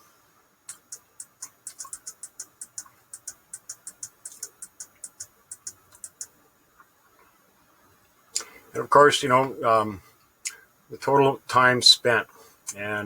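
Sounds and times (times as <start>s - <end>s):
computer keyboard typing: 0.7s - 6.3s.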